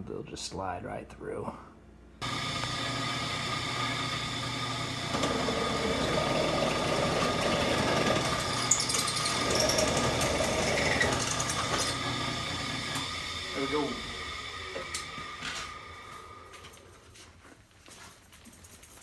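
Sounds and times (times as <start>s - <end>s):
electric drill boring: 2.2s - 16.8s.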